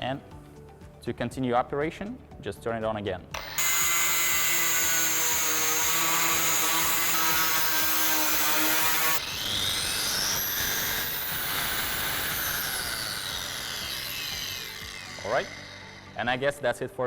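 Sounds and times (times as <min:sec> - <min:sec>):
grinder spinning down whine: 0:03.4 - 0:16.5
angle grinder running: 0:03.4 - 0:16.6.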